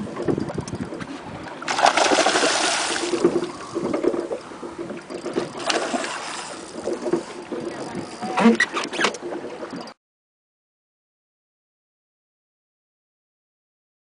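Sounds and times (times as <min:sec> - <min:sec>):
water splashing against boat: 0:00.0 - 0:10.0
loud rushing splash: 0:01.7 - 0:03.2.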